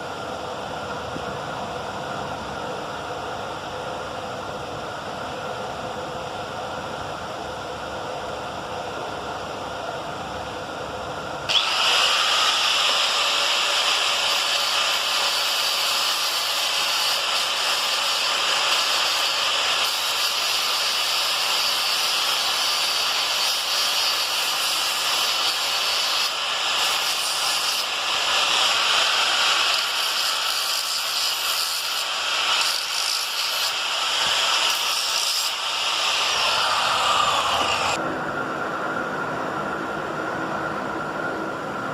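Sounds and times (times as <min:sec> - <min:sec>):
power tool grinding knife blade: 0:11.5 - 0:38.0.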